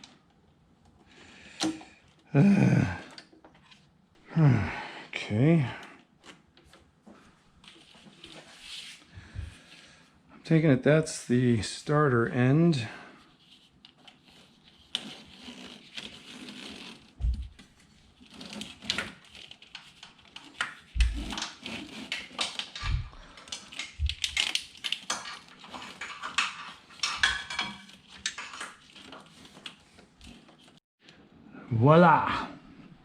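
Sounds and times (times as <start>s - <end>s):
battery cables clicking and rattling: 18.2s - 30.8s.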